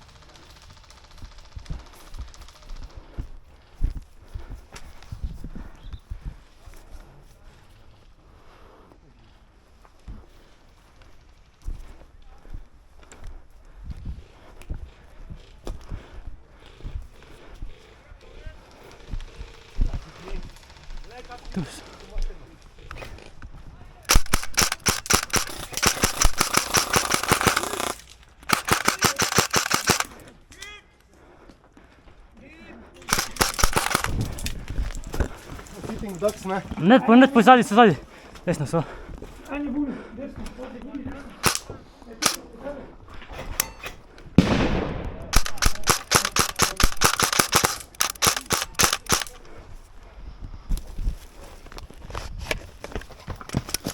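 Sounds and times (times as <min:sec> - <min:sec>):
airsoft guns firing rapidly: 0:00.0 - 0:02.8, 0:24.1 - 0:30.3, 0:33.0 - 0:34.4, 0:41.4 - 0:42.5, 0:44.4 - 0:49.4.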